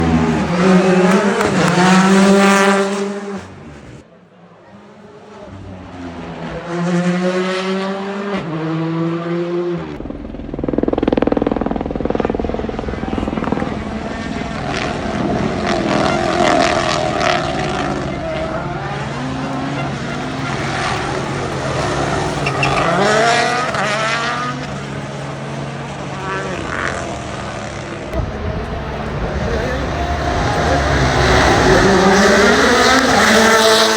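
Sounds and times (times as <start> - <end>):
rally car engine revving: 0.0 - 33.9
exhaust cracks and pops: 10.0 - 17.0.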